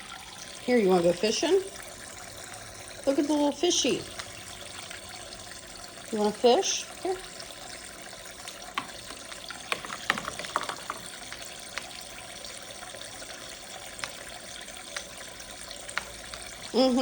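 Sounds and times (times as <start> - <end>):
faucet water running: 0.0 - 17.0
toy dishes clicking and knocking: 8.5 - 12.3, 13.8 - 16.8.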